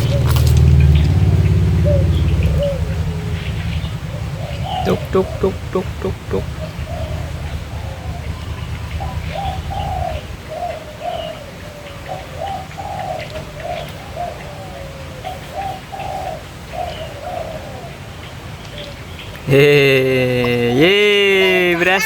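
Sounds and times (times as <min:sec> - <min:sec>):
steady low rumble: 0:00.0 - 0:11.1
dove cooing: 0:00.0 - 0:19.3.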